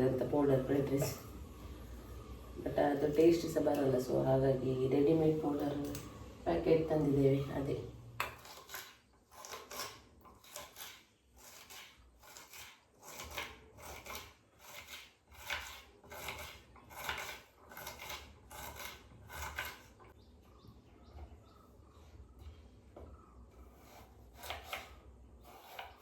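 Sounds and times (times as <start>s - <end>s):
knife cutting vegetables: 8.2s - 20.0s, 23.5s - 26.0s.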